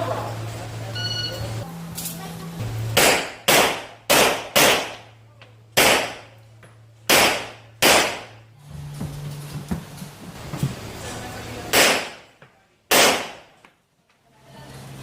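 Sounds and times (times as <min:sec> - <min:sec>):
pistol shots: 0:03.0 - 0:05.1, 0:05.8 - 0:06.4, 0:07.1 - 0:08.4, 0:11.7 - 0:12.3, 0:12.9 - 0:13.6.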